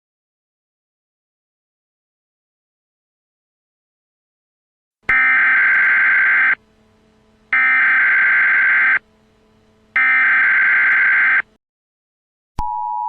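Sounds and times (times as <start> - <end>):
buzzing digital data tones: 5.1 - 6.6, 7.5 - 9.0, 10.0 - 11.5.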